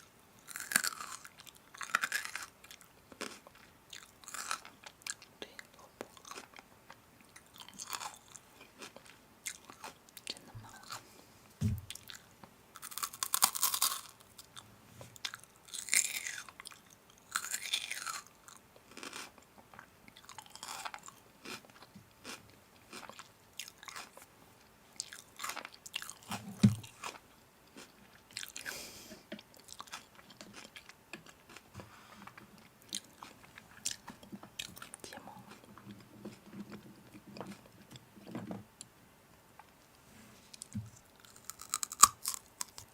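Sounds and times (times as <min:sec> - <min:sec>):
person chewing crunchy food: 0:00.4 - 0:05.3, 0:06.0 - 0:06.7, 0:07.3 - 0:11.1, 0:11.9 - 0:14.6, 0:15.2 - 0:24.3, 0:25.0 - 0:28.8, 0:29.4 - 0:37.9, 0:40.6 - 0:42.9
soft low thumps: 0:11.6 - 0:12.0.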